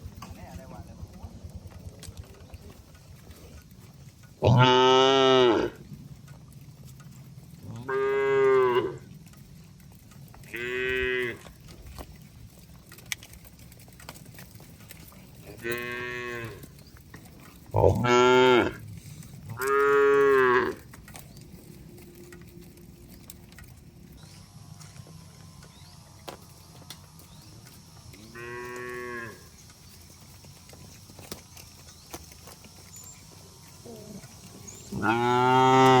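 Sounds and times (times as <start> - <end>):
cattle mooing: 4.4 - 5.8, 7.6 - 9.1, 10.4 - 11.7, 15.4 - 16.8, 17.7 - 18.8, 19.5 - 21.0, 28.1 - 29.6, 33.8 - 36.0.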